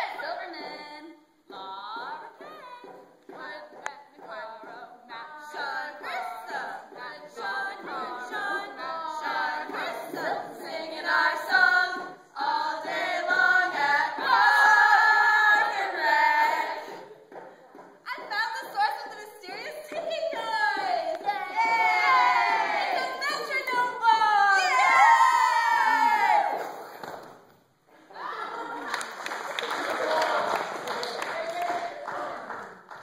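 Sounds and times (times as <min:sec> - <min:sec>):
girls singing a cappella: 0:00.0 - 0:26.9.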